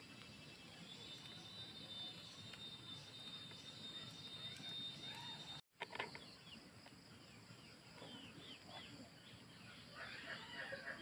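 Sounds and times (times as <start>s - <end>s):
faint bird chirps: 0.0s - 11.0s.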